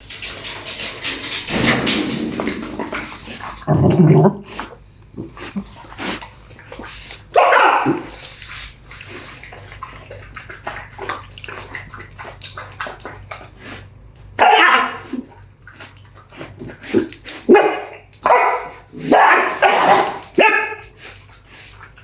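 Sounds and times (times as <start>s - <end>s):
dog barking: 7.4s - 8.1s, 14.4s - 15.1s, 17.5s - 20.8s.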